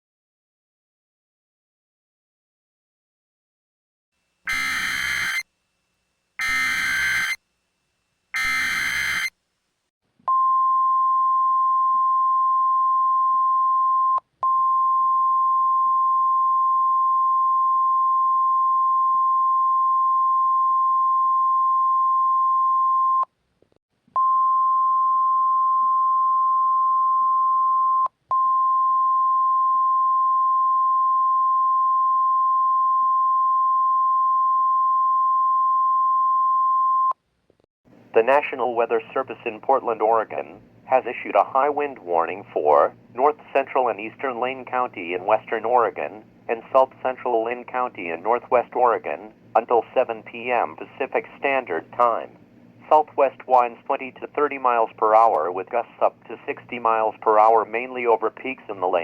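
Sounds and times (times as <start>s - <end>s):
steady alert tone beep: 4.5s - 5.4s, 6.4s - 7.4s, 8.4s - 9.3s.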